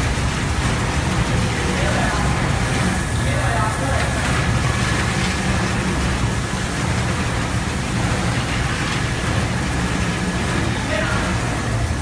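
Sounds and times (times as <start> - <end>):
carpet washing machine drone: 0.0 - 12.0.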